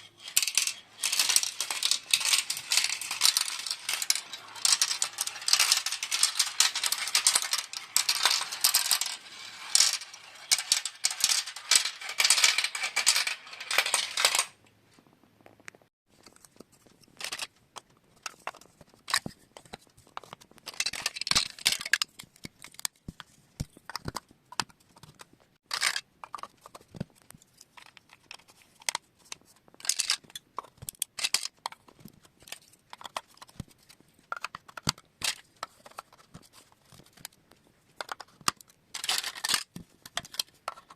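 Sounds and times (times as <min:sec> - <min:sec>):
marbles clattering in plastic run: 0:00.2 - 0:14.6, 0:17.2 - 0:17.5, 0:20.6 - 0:22.1, 0:25.7 - 0:26.0, 0:29.8 - 0:30.2, 0:31.1 - 0:31.7, 0:38.9 - 0:40.9.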